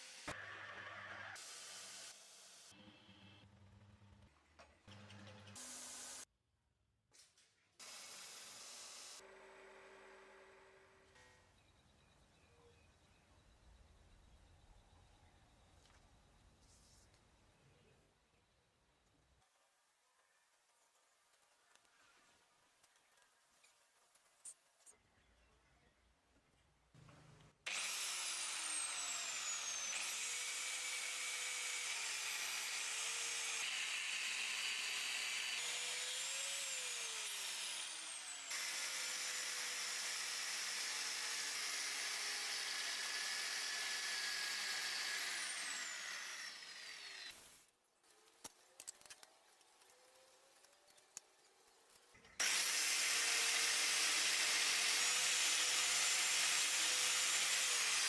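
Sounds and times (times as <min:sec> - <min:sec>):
power tool motor running: 0:27.7 - 0:47.4.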